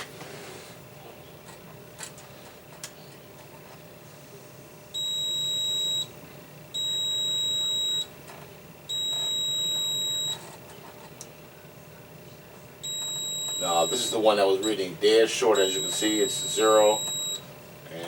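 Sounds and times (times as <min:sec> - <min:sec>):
multimeter beeping: 0:05.0 - 0:06.1, 0:06.7 - 0:08.1, 0:08.9 - 0:10.4, 0:12.8 - 0:17.5.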